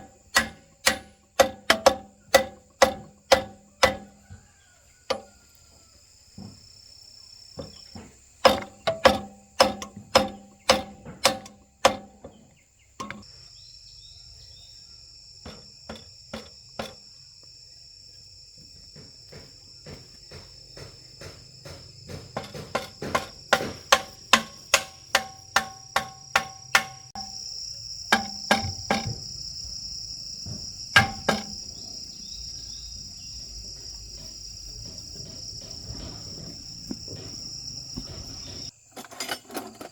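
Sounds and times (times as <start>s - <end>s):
hammer striking metal: 0.0s - 4.3s, 8.4s - 12.4s, 13.0s - 13.2s, 20.8s - 27.4s, 28.1s - 29.2s, 31.0s - 31.7s
insects trilling: 0.0s - 39.9s.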